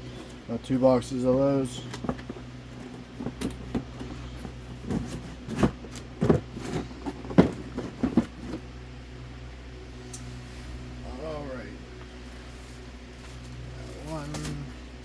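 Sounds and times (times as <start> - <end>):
steady low hum: 0.0 - 15.0
boxes knocking and rustling: 1.3 - 8.7.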